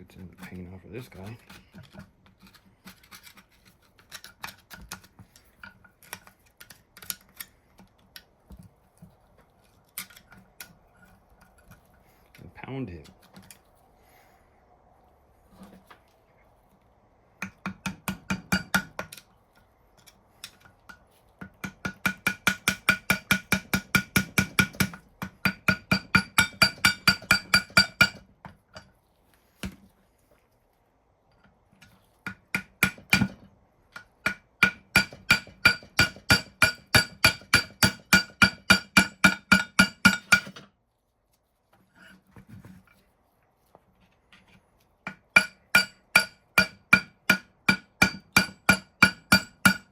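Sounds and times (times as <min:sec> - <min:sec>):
hammer beating on metal: 0:17.6 - 0:19.0, 0:21.6 - 0:28.2, 0:34.2 - 0:40.6, 0:45.3 - 0:49.9.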